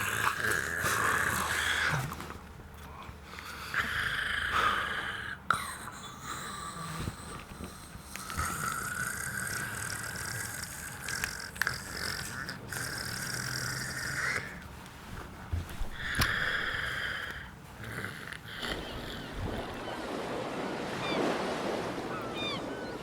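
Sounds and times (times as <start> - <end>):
man snoring: 8.2 - 14.6.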